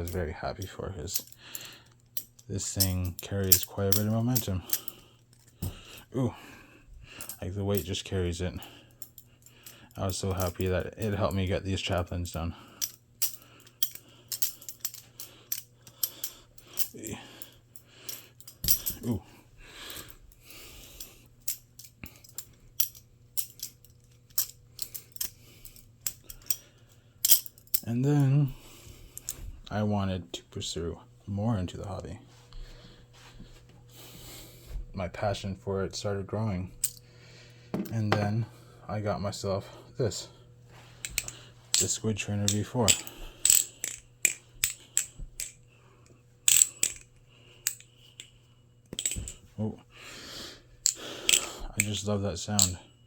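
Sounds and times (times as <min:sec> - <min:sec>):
metal knife handles clicking: 0:00.0 - 0:06.1, 0:07.2 - 0:19.2, 0:19.9 - 0:28.4, 0:41.0 - 0:49.5, 0:50.8 - 0:52.8
balisong trainer handles clicking: 0:41.0 - 0:45.6, 0:46.5 - 0:48.3, 0:48.9 - 0:49.4.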